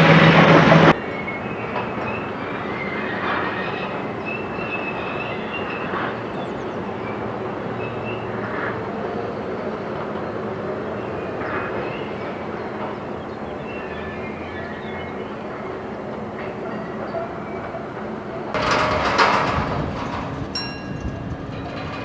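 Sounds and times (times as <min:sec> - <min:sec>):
steady mechanical rumble: 0:00.0 - 0:01.0, 0:18.6 - 0:22.0
crane squealing metal on metal: 0:00.0 - 0:22.0.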